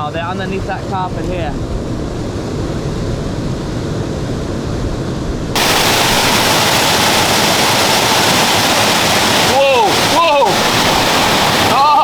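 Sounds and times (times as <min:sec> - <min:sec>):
wind rumble on microphone: 0:00.0 - 0:12.0
flowing water rushing: 0:05.6 - 0:12.0.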